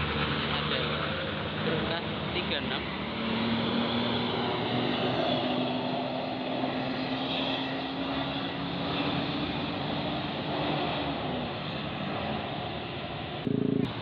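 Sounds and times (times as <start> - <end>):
bus diesel engine labouring: 0.0 - 14.0
road and tyre noise: 0.0 - 14.0.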